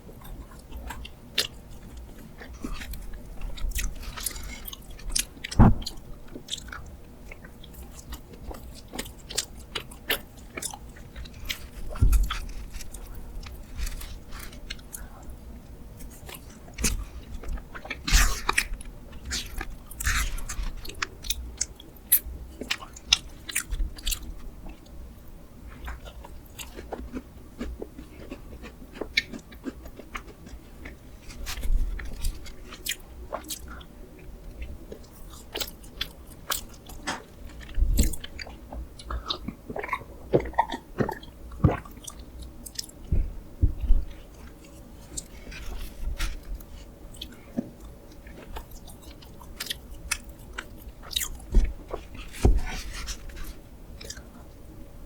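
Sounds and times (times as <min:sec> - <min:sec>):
chewing and biting: 0:00.2 - 0:15.4, 0:16.0 - 0:25.0, 0:25.7 - 0:54.4
short crunches: 0:03.8 - 0:06.6.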